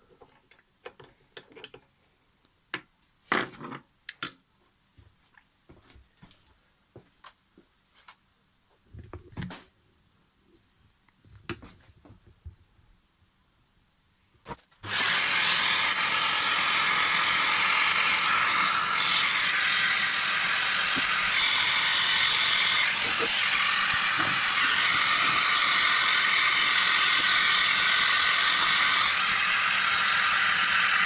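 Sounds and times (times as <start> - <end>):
workshop machine hissing: 14.8 - 31.0.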